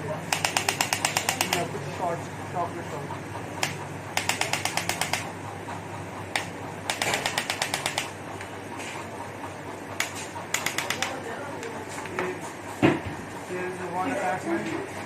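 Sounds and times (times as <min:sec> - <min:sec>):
adjusting gun rapid clicks: 0:00.3 - 0:01.7, 0:03.6 - 0:05.3, 0:06.3 - 0:08.1, 0:10.0 - 0:11.2.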